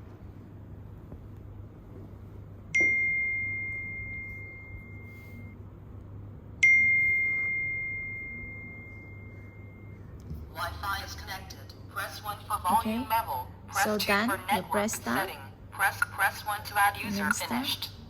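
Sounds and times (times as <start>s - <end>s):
electronic bell-like dings: 2.8s - 5.6s, 6.6s - 10.1s.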